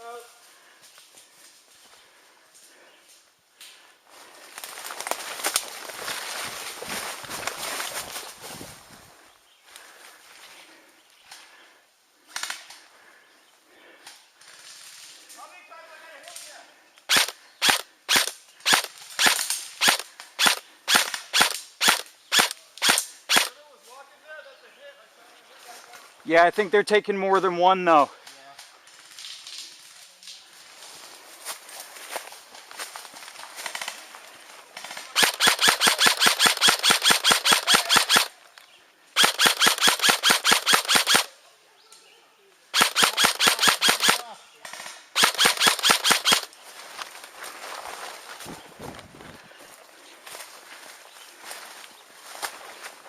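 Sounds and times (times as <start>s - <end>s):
airsoft gun shots: 17.1s - 23.5s, 35.2s - 38.3s, 39.2s - 41.3s, 42.8s - 44.3s, 45.2s - 46.5s.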